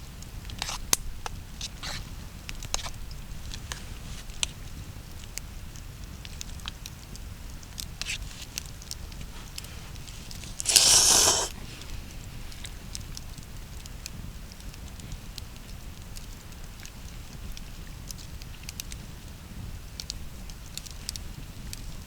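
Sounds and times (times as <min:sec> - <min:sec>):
short loud rush of noise: 0:10.4 - 0:11.6.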